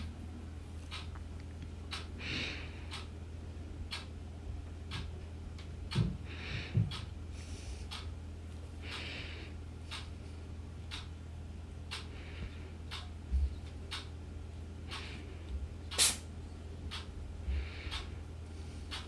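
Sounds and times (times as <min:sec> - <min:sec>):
low steady hum: 0:00.0 - 0:19.0
clock ticking: 0:10.9 - 0:11.1, 0:12.9 - 0:13.1, 0:17.9 - 0:18.1
short breathy puffs: 0:15.9 - 0:16.2.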